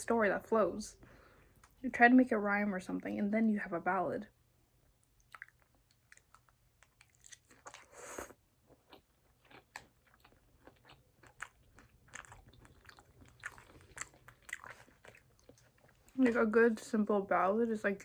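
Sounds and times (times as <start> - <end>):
person chewing and crunching: 5.2 - 16.2.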